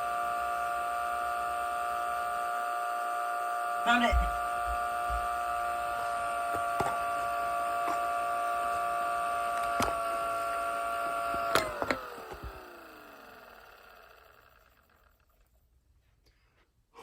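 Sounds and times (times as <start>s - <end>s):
electric sirens winding down: 0.0s - 15.0s.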